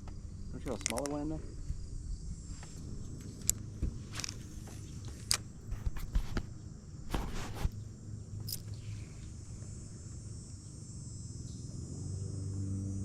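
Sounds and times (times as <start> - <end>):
insect chirring: 0.0 - 13.0
knocks and rustles: 3.8 - 7.8.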